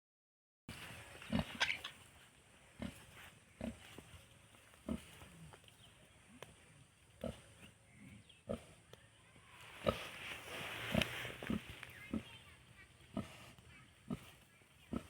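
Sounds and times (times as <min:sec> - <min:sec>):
pigs grunting: 0:01.2 - 0:02.0, 0:07.2 - 0:08.8, 0:13.1 - 0:15.0.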